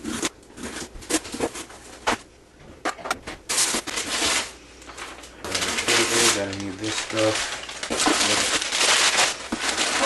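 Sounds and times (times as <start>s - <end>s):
cardboard rustling: 3.5s - 10.0s.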